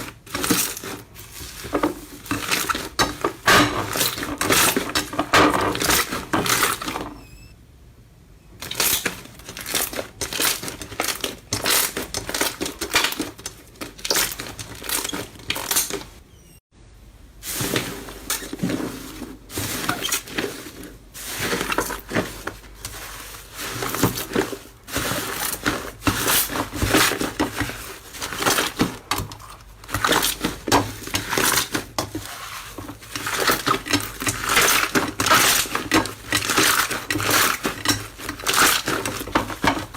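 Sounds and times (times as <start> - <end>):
slime crackling and crunching: 8.6 - 16.0.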